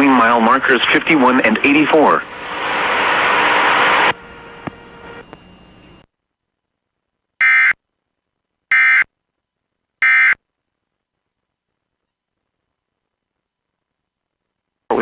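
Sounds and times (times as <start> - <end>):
radio hiss: 0.0 - 5.3.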